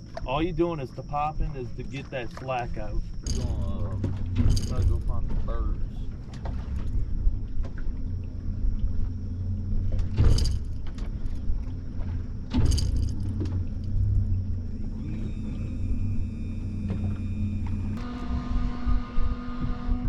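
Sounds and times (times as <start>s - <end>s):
boat motor rumbling: 0.0s - 20.0s
thin high whine: 14.0s - 20.0s.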